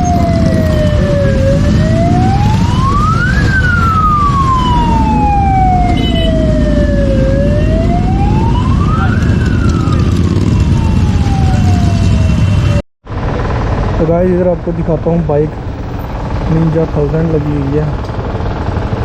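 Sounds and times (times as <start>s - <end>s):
wailing siren: 0.0s - 12.8s
low rumble of road noise: 0.0s - 19.0s.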